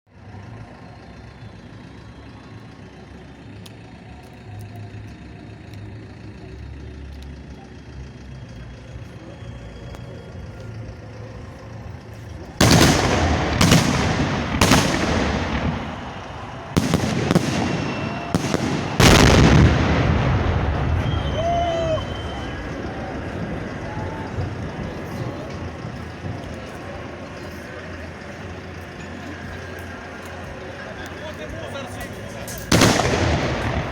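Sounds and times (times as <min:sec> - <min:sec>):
fireworks shots: 0:12.6 - 0:27.4, 0:32.6 - 0:33.9.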